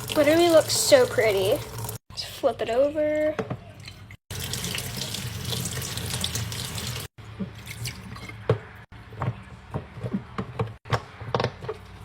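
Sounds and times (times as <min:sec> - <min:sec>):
tap water running into sink: 0:00.0 - 0:02.0, 0:04.3 - 0:07.1.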